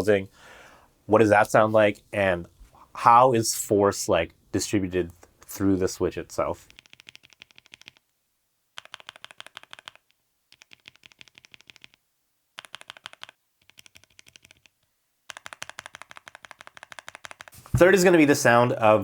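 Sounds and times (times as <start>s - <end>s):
mechanical keyboard typing: 6.7s - 8.0s, 8.8s - 12.0s, 12.6s - 17.6s.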